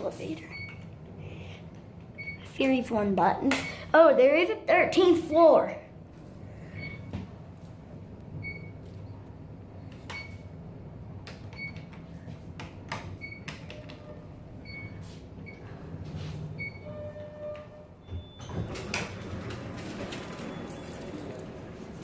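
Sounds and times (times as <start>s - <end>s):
elevator car humming: 0.0s - 3.3s, 5.3s - 22.0s.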